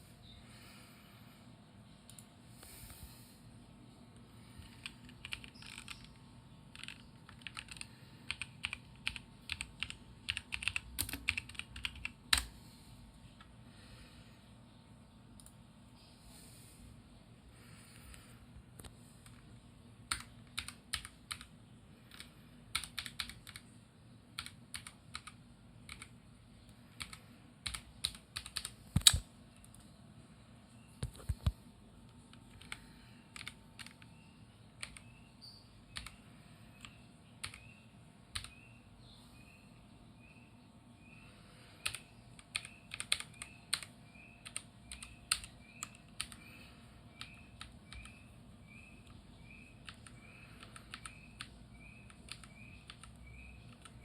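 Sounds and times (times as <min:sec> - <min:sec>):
computer keyboard keys clicking: 0:04.6 - 0:12.5, 0:20.1 - 0:21.5, 0:22.1 - 0:23.7, 0:24.3 - 0:26.2, 0:27.0 - 0:29.8, 0:31.0 - 0:34.2, 0:34.8 - 0:35.2, 0:35.9 - 0:38.6, 0:41.8 - 0:46.4, 0:47.1 - 0:54.0.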